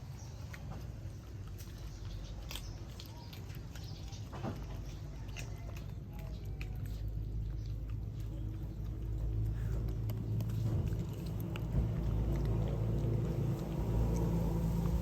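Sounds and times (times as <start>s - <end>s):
dog chewing wetly: 0.0s - 15.0s
steady low rumble: 6.0s - 15.0s.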